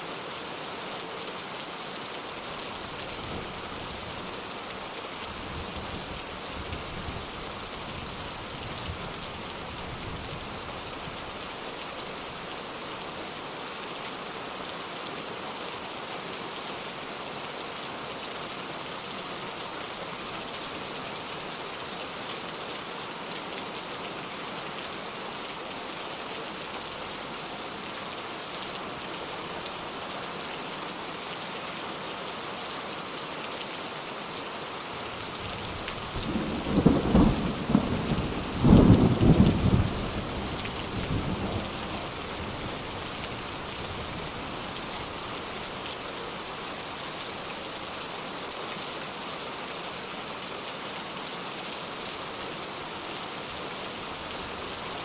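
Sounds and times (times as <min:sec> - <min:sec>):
heavy rain hissing: 0:33.8 - 0:50.9.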